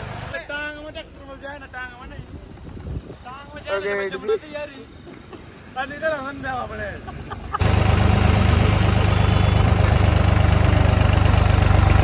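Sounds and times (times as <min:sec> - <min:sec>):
tractor diesel engine running: 0:07.6 - 0:12.0.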